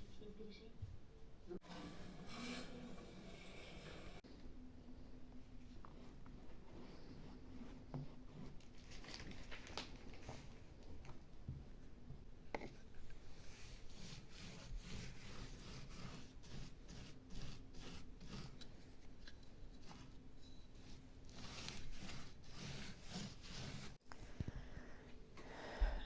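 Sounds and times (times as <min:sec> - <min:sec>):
hands scraping building materials: 0:20.8 - 0:24.0.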